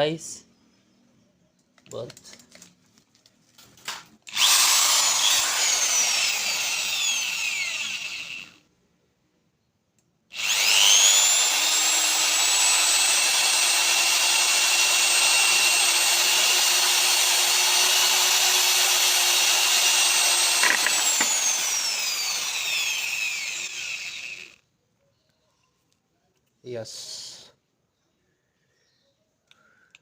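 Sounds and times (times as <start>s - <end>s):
power drill whining: 4.3s - 8.6s, 10.3s - 24.6s.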